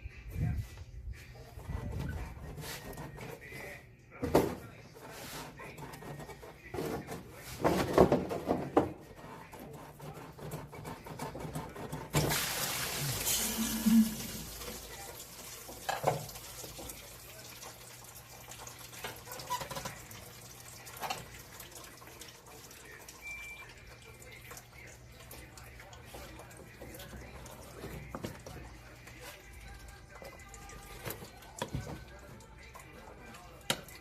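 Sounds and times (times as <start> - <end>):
liquid pouring and splashing: 12.0 - 34.0.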